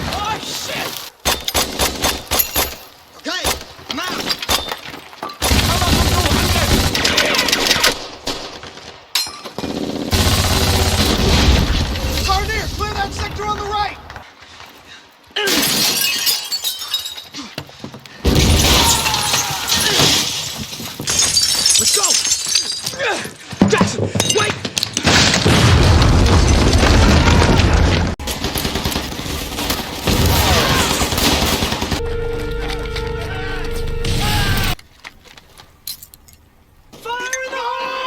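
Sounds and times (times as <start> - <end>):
shattering debris crashing: 18.2 - 32.0
people shouting: 18.6 - 20.1, 30.3 - 31.2, 32.5 - 34.8, 37.0 - 38.0
film music: 31.8 - 34.8.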